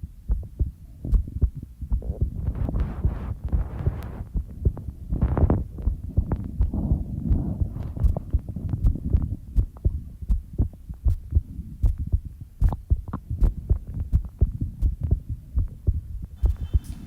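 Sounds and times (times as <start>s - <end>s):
heartbeat thumps: 0.0s - 17.0s.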